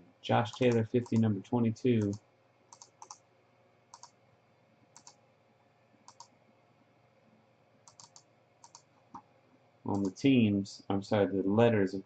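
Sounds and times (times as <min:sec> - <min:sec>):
computer mouse clicks: 0:00.5 - 0:01.3, 0:02.0 - 0:03.2, 0:03.9 - 0:04.2, 0:04.9 - 0:05.2, 0:06.0 - 0:06.3, 0:07.8 - 0:09.3, 0:09.9 - 0:10.2.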